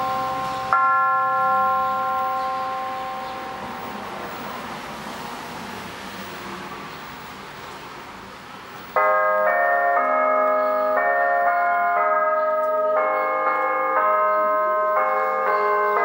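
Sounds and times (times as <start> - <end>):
church bells playing a tune: 0.0 - 4.8, 9.0 - 16.0.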